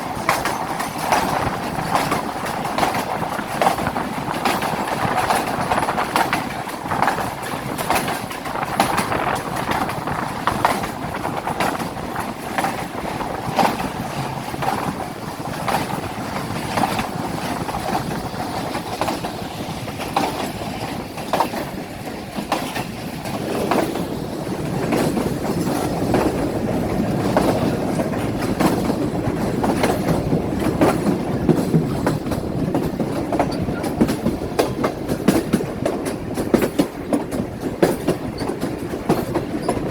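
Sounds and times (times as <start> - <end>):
train rumbling along track: 0.0 - 39.9
wheels clicking over rail joints: 0.0 - 39.9.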